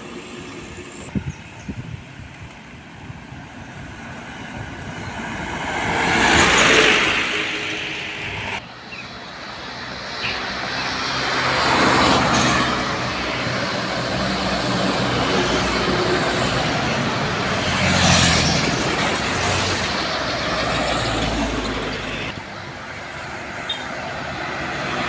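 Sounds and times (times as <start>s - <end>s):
road noise of passing vehicles: 0.0s - 25.0s
truck engines running: 0.0s - 25.0s.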